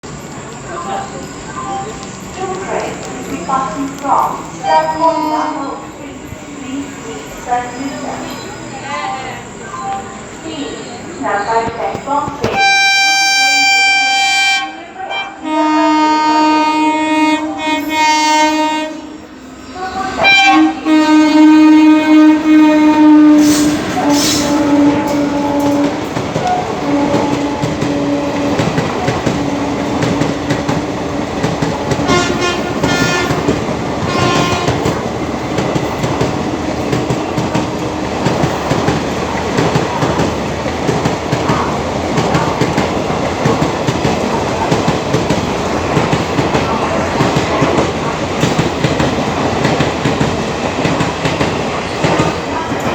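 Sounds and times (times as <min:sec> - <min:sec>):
locomotive twin-tone horn: 0:04.6 - 0:05.9, 0:12.4 - 0:35.2
train wheels clattering on track: 0:11.5 - 0:13.1, 0:20.4 - 0:52.9.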